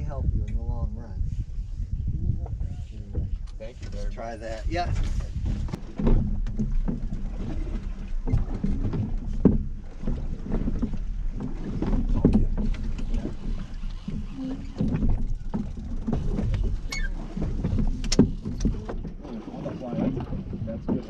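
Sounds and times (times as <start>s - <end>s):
water noise: 0.0s - 21.0s
wind: 0.0s - 21.0s
boat machinery drone: 5.7s - 21.0s.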